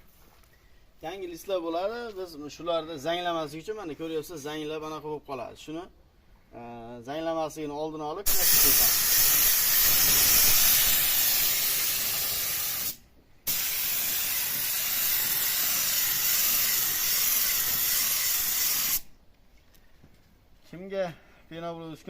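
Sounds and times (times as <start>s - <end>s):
paint spraying hiss: 8.3s - 19.1s.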